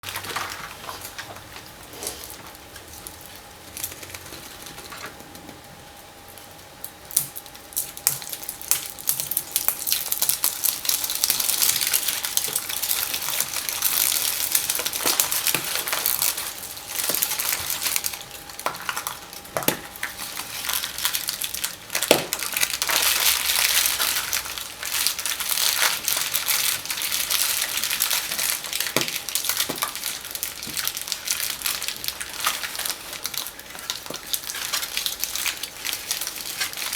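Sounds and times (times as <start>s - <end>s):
foil wrappers crinkling: 0.0s - 5.7s, 6.3s - 36.9s.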